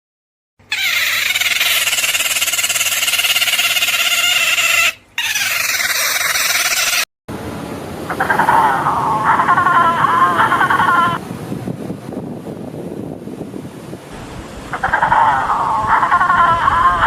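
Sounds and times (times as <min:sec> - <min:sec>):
long buzzy animal calls: 0:00.7 - 0:07.1, 0:08.1 - 0:11.2, 0:14.7 - 0:17.0
wavering animal call: 0:00.7 - 0:07.1, 0:08.1 - 0:11.2, 0:14.7 - 0:17.0.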